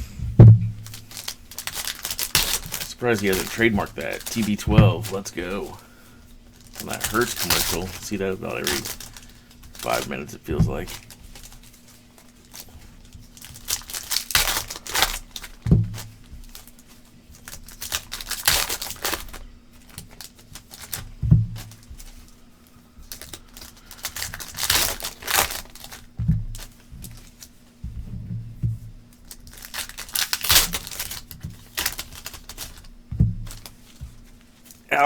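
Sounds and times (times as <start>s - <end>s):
dull thumps: 0.0s - 11.4s, 15.7s - 16.4s, 21.1s - 21.9s, 26.2s - 27.2s, 27.8s - 29.1s, 33.0s - 34.3s
card pack wrappers crinkling and tearing: 0.8s - 27.8s, 29.1s - 35.0s.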